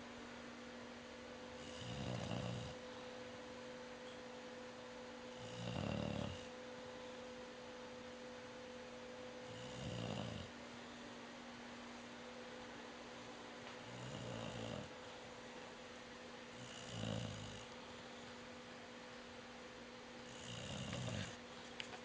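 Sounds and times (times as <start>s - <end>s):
pet snoring: 1.6s - 2.8s, 5.3s - 6.5s, 9.4s - 10.5s, 13.8s - 14.9s, 16.5s - 17.8s, 20.2s - 21.4s.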